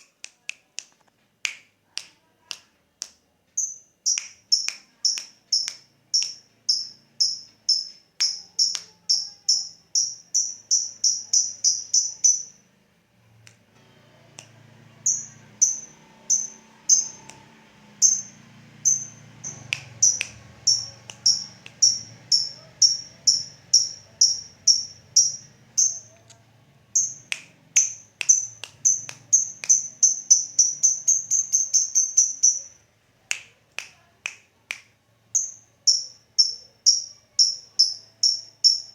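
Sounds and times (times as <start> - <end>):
bird sharp high chips: 15.1 - 26.2.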